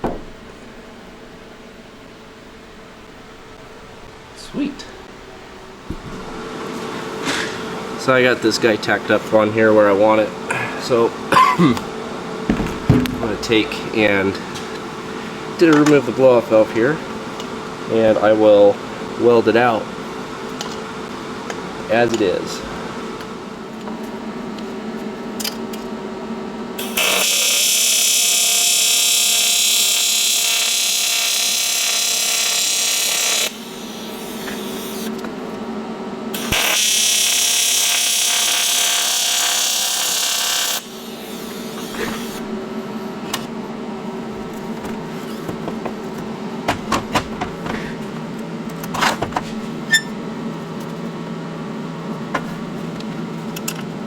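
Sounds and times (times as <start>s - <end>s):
steady hum: 0.0s - 26.8s, 40.8s - 54.0s
welding arc buzzing: 26.8s - 35.2s, 36.3s - 43.1s.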